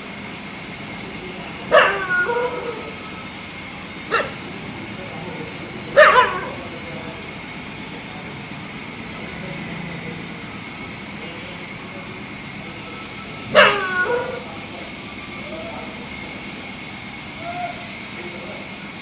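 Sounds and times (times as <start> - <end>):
dog barking: 1.7 - 2.9, 4.1 - 4.4, 5.9 - 6.6, 13.5 - 14.5.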